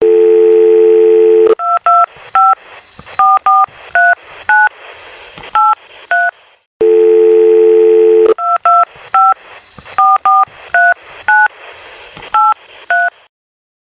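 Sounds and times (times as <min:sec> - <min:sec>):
dial tone: 0:00.0 - 0:01.6, 0:06.8 - 0:08.6.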